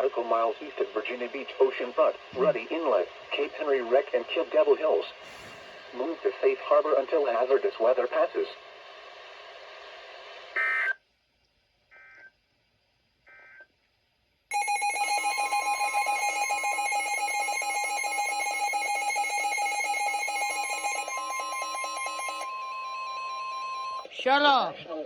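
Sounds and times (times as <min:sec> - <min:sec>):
broadcast hiss: 0:00.0 - 0:11.0
rapidly pulsing alarm: 0:14.5 - 0:24.2.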